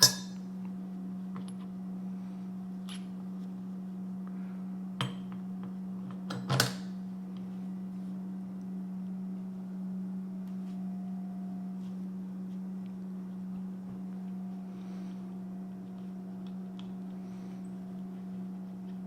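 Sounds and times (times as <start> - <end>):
metal tools clinking: 0.0 - 0.4
steady low hum: 0.0 - 19.0.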